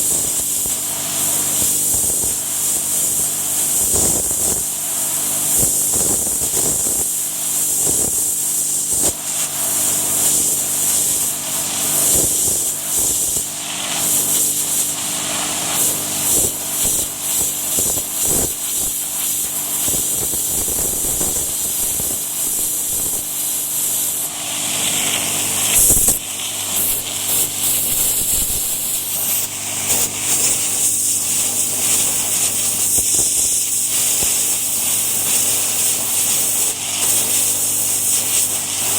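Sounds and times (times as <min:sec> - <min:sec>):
pressure washer water jet hissing: 0:00.0 - 0:38.9
pressure washer motor humming: 0:08.3 - 0:38.9.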